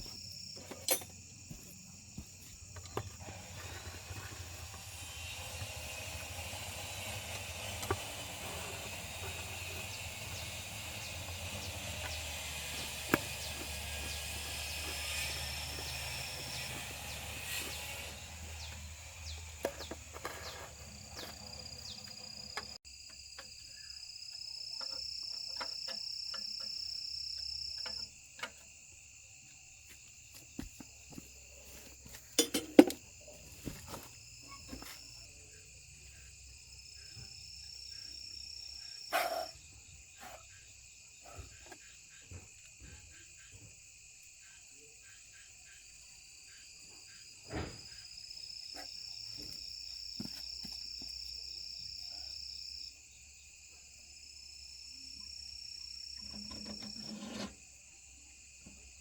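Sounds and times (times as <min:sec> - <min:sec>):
insects chorus: 0:00.0 - 0:59.0.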